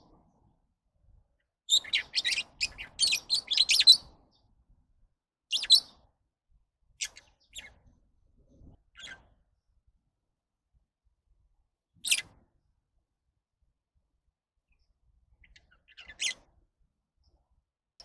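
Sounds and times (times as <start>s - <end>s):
lovebirds chirping: 1.7s - 4.4s, 5.5s - 5.9s.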